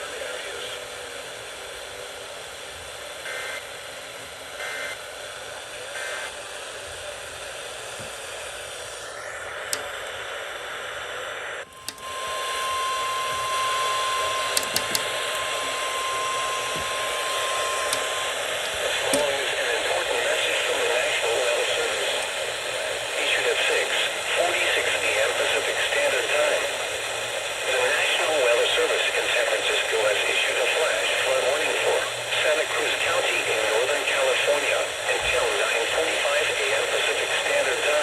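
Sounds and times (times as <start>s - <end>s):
radio static hiss: 0.0s - 38.0s
steady warning alarm tone: 3.2s - 3.7s, 4.6s - 5.1s, 5.9s - 6.3s, 11.5s - 25.0s
clicks: 9.7s - 10.2s, 11.6s - 13.6s, 14.5s - 15.8s, 17.6s - 19.5s.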